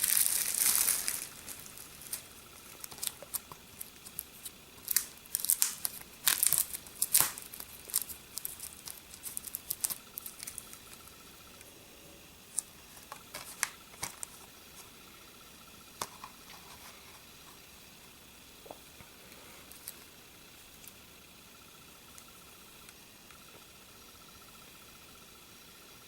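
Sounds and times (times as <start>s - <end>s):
plastic wrapping crinkling: 0.0s - 11.1s
small crackles and clicks: 0.0s - 11.7s, 12.5s - 14.5s, 18.6s - 21.0s.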